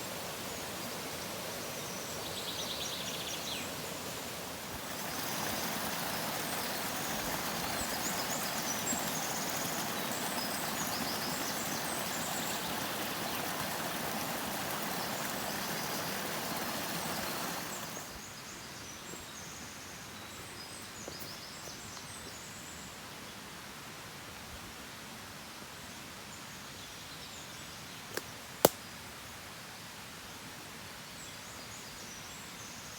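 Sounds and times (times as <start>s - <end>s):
water rushing: 4.0s - 18.2s
birds chirping: 4.8s - 18.2s.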